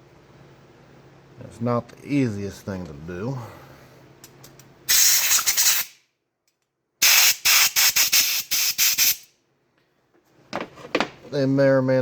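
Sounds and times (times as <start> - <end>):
pressurised spray hissing: 4.9 - 5.9, 7.0 - 9.3.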